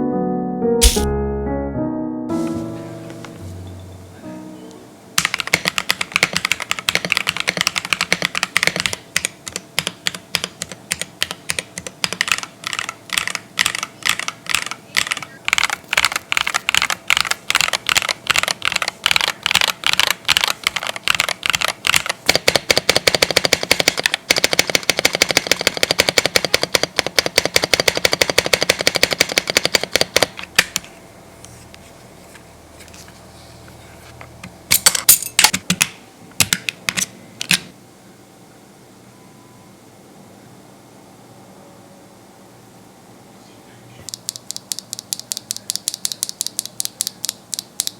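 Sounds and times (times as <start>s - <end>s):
mechanical keyboard typing: 5.2s - 30.8s, 44.1s - 47.9s.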